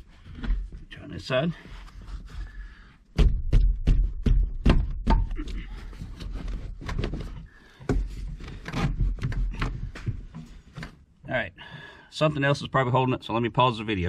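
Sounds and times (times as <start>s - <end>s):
knocks and thumps on car panel: 3.1s - 5.3s.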